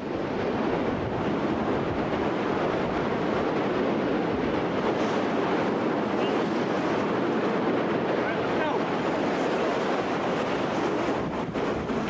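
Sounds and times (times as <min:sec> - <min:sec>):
rushing storm noise: 0:00.0 - 0:12.0.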